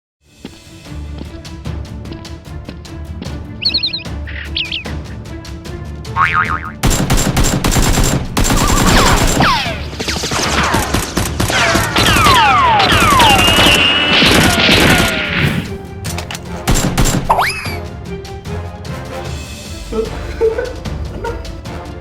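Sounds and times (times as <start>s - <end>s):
music: 0.2s - 22.0s
falling whistles: 3.6s - 5.0s, 12.2s - 14.2s
burst of gunfire: 6.8s - 15.4s.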